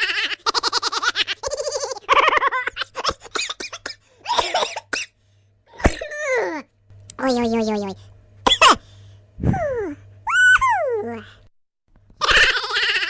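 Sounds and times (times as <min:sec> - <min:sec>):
cartoon giggle-like laughter: 0:00.0 - 0:03.8, 0:12.2 - 0:13.0
cartoon vocal chattering: 0:12.2 - 0:13.0.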